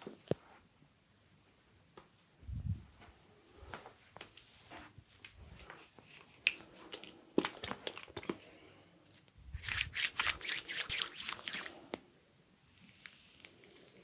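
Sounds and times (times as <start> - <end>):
hands rubbing skin and fabric: 9.5 - 12.0.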